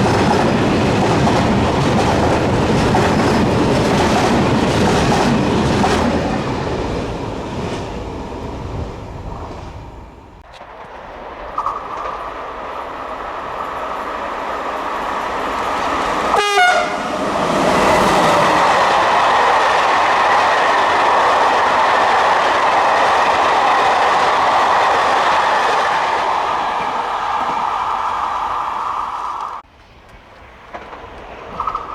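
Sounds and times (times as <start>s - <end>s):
train wheels rushing on rail: 0.0s - 31.9s
train horn blast: 16.3s - 17.2s.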